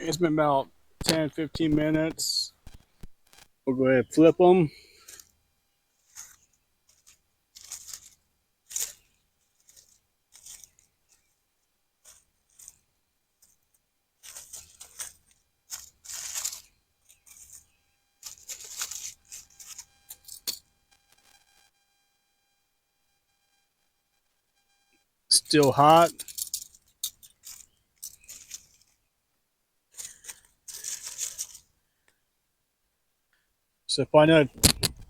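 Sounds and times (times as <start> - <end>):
metal tongs clicking and scraping: 18.2 - 20.6, 25.5 - 28.8.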